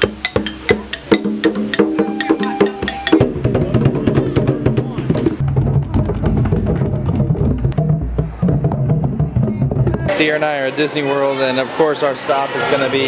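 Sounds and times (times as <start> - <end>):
percussive wood-block melody: 0.0 - 10.1
low bass line: 2.0 - 10.1.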